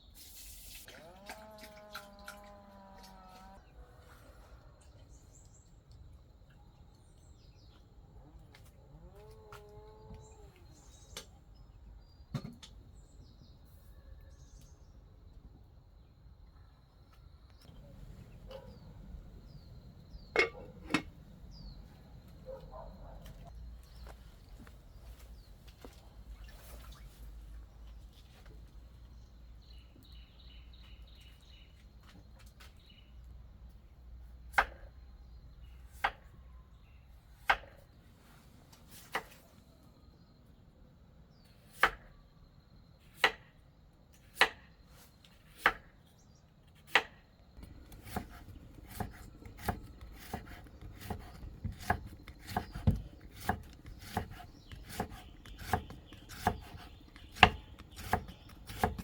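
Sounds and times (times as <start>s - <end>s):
blade chopping on wooden board: 46.9s - 59.0s.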